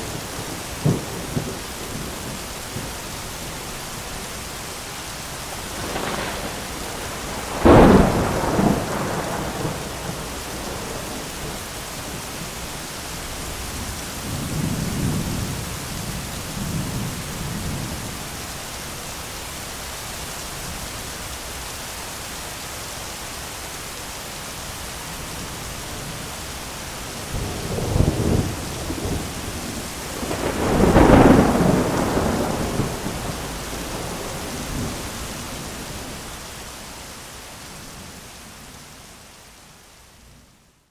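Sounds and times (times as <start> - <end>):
thunder claps and rumbles: 0.0 - 3.6, 5.5 - 12.6, 27.0 - 36.3
heavy rain falling: 0.0 - 40.4.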